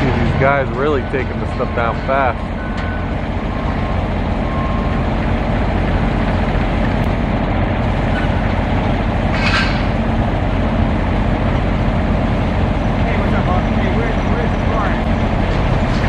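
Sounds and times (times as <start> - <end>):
heavy trucks and machinery rumbling: 0.0 - 16.0
hissing squeal: 9.3 - 10.0.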